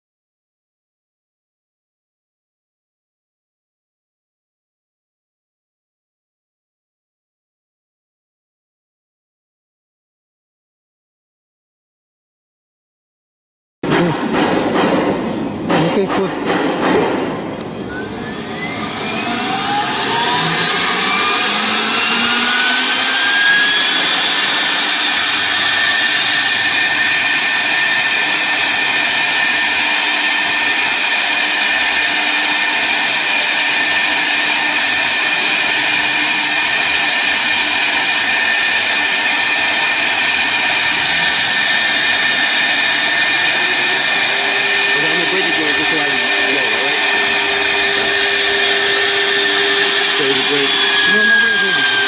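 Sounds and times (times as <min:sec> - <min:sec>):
router spindle motor whine: 0:17.5 - 0:52.0.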